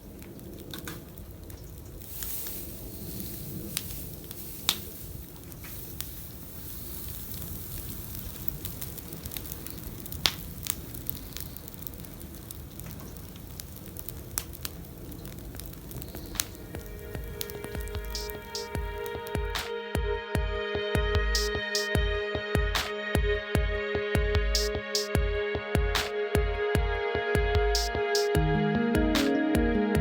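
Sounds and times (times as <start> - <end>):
campfire crackling and popping: 0.0 - 19.8, 21.4 - 22.0, 24.5 - 25.2.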